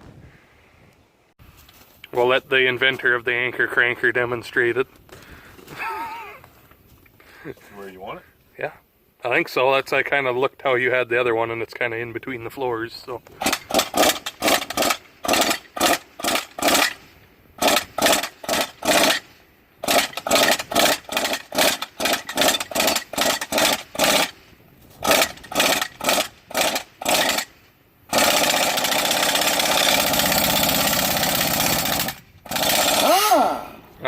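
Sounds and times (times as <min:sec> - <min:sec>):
impact wrench hammering: 0:13.4 - 0:17.0, 0:17.6 - 0:19.2, 0:19.8 - 0:24.4, 0:25.0 - 0:27.5, 0:28.1 - 0:33.4.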